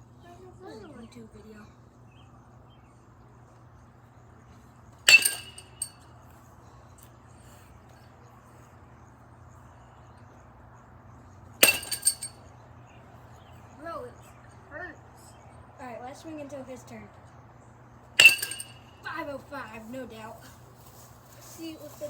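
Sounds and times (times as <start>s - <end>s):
bat hitting ball ping: 5.1s - 6.0s, 11.6s - 12.3s, 18.2s - 19.0s.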